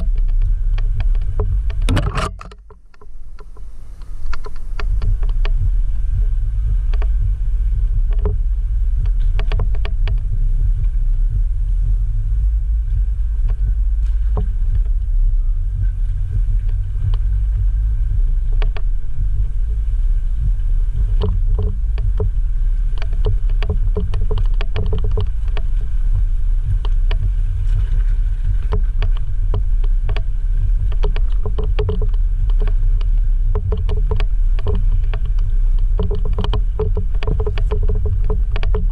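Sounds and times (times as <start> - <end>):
knocks and rattles: 0.0 - 3.7, 4.3 - 11.5, 18.5 - 19.6, 20.4 - 22.4, 23.0 - 38.9
vehicle engine rumble: 0.0 - 38.9.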